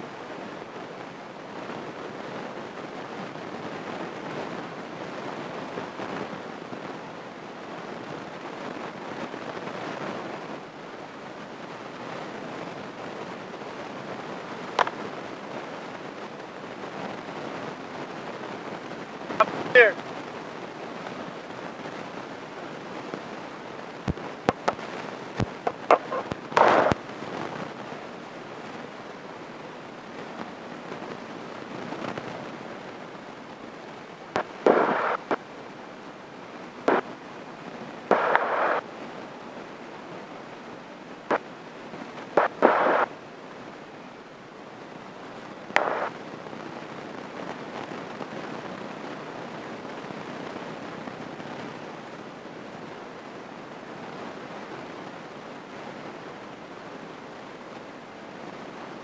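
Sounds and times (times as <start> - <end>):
steady hiss: 0.0 - 59.0.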